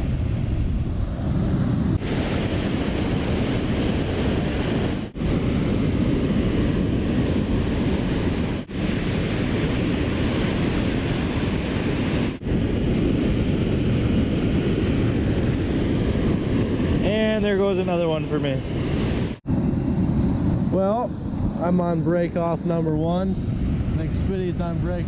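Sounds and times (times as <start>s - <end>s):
wind buffeting microphone: 0.0s - 25.0s
water rushing: 1.2s - 5.3s, 6.4s - 12.4s.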